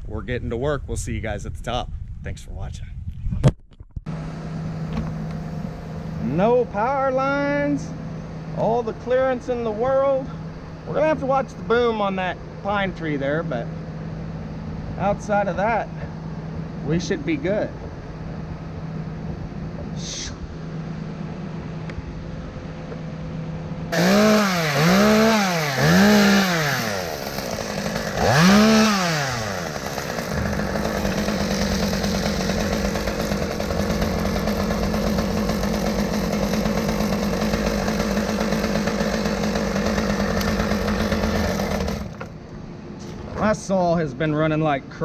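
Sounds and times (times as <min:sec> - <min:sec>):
chainsaw starting and revving: 0:23.9 - 0:42.4.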